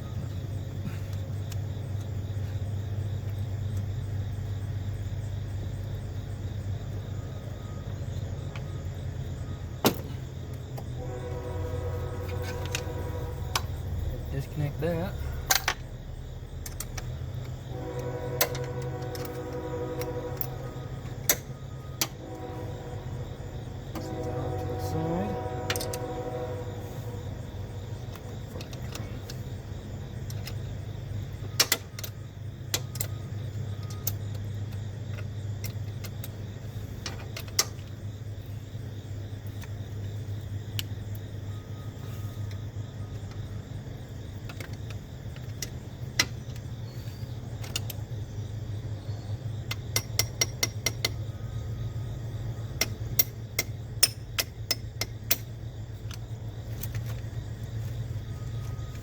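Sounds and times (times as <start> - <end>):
steady low hum: 0.0 - 59.0
metal tools clicking: 49.6 - 51.2, 52.8 - 56.2.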